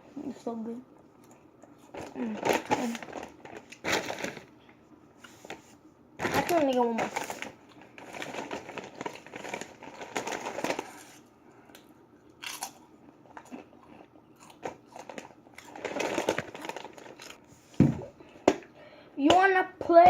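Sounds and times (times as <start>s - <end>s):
potato chips crunching: 6.2s - 11.2s, 12.3s - 17.4s.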